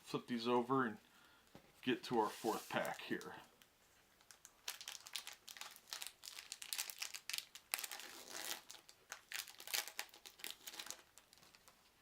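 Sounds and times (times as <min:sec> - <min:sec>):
wrapper crinkling and tearing: 0:04.2 - 0:11.9.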